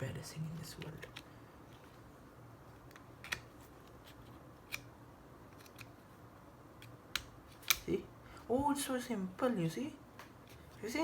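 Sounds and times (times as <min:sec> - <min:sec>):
faint plastic and metal clicks: 0:05.5 - 0:06.0.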